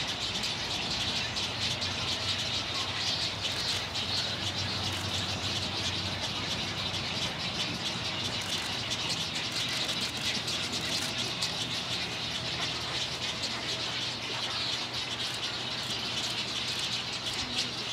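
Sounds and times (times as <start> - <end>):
birds chirping and chattering: 0.0 - 17.9.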